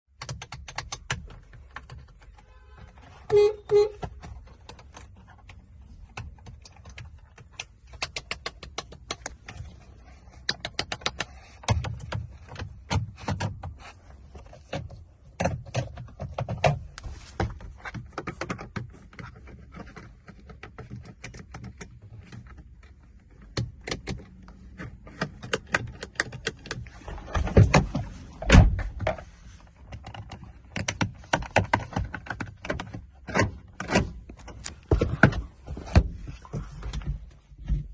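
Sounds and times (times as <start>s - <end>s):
irregular sharp clicks and knocks: 4.0s - 17.0s.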